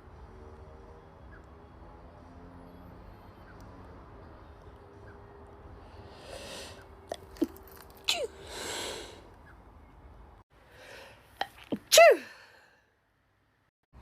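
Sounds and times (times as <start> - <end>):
woman sneezing: 8.1 - 8.4, 11.8 - 12.4
breathy exhale: 8.4 - 9.3.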